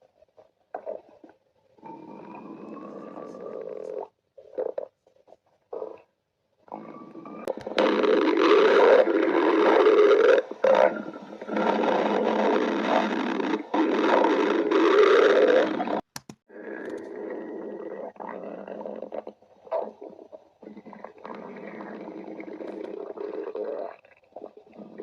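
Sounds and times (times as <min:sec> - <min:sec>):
stomach growling: 0:00.0 - 0:25.0.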